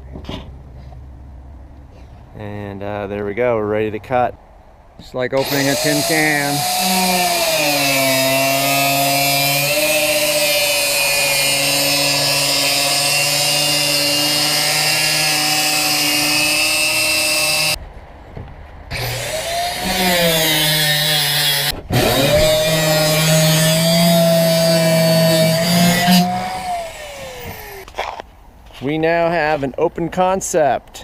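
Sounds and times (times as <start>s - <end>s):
electric power saw cutting metal: 5.4s - 17.8s, 18.9s - 27.9s.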